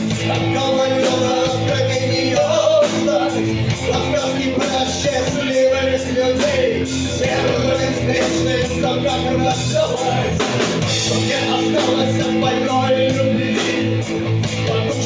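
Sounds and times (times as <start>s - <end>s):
rock band playing live: 0.0s - 15.0s.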